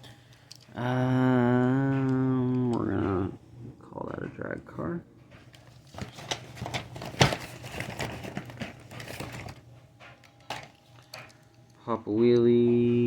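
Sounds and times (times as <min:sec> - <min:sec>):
rustling: 0:05.4 - 0:11.4.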